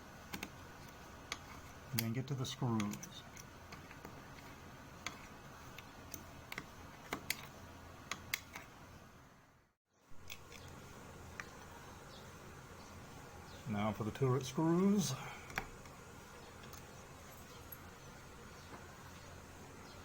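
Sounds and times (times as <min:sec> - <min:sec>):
low room hum: 0:00.0 - 0:20.0
small tools clicking on metal: 0:00.3 - 0:08.7.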